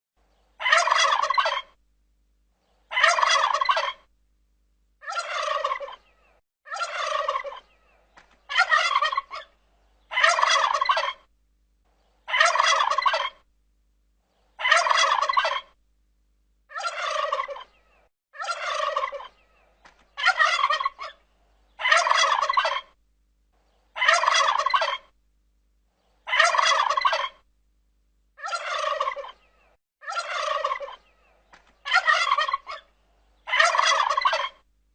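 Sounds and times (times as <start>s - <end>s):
turkey gobbling: 0.6s - 1.8s, 2.9s - 4.1s, 5.0s - 11.3s, 12.3s - 13.5s, 14.6s - 15.8s, 16.7s - 23.0s, 23.9s - 25.2s, 26.2s - 27.4s, 28.4s - 34.6s.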